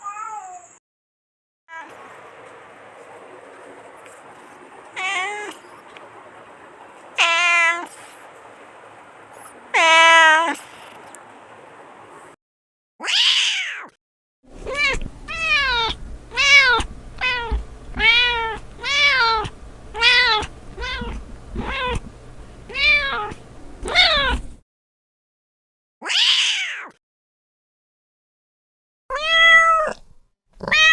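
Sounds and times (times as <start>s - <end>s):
cat meowing: 5.0s - 5.7s, 7.2s - 8.0s, 9.3s - 11.0s, 13.0s - 13.9s, 14.7s - 22.0s, 26.0s - 26.9s, 29.1s - 30.9s.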